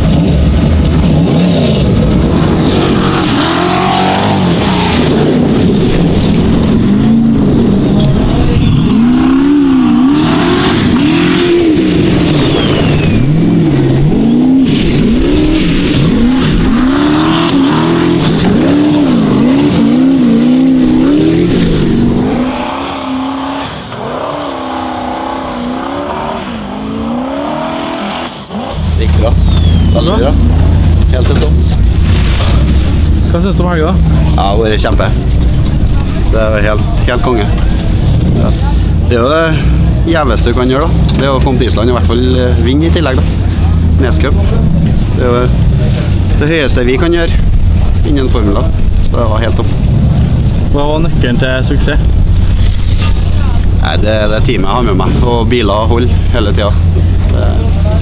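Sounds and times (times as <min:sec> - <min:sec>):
buggy engine revving hard: 0:00.0 - 0:58.0.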